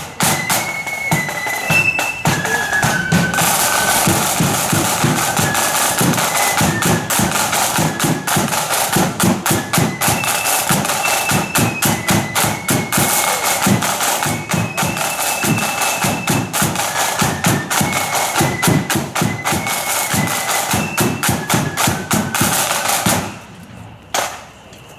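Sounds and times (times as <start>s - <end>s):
flute melody: 0.0s - 23.5s
bass and side drums: 1.6s - 8.5s.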